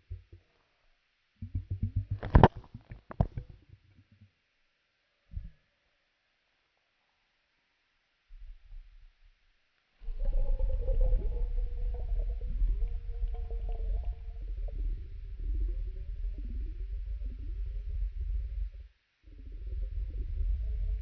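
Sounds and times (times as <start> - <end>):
stomach rumbling: 1.4 - 4.4, 5.3 - 5.6, 10.0 - 21.0.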